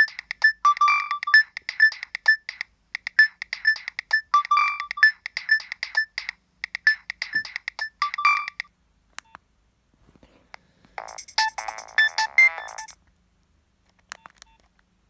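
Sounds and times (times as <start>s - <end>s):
mobile phone ringtone: 0.0s - 2.4s, 3.2s - 6.1s, 6.9s - 8.7s, 11.0s - 13.0s.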